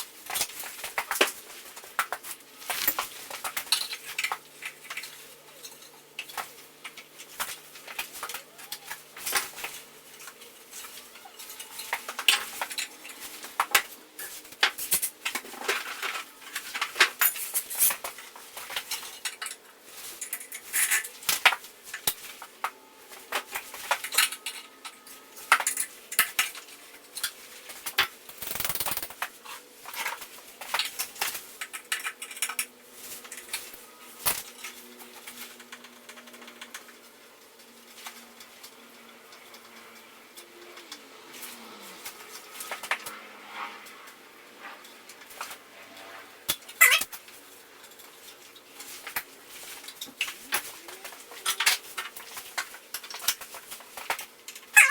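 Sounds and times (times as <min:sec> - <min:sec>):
tools and metal parts clinking: 0:00.2 - 0:22.4, 0:23.1 - 0:28.1, 0:29.2 - 0:36.8, 0:46.7 - 0:47.1.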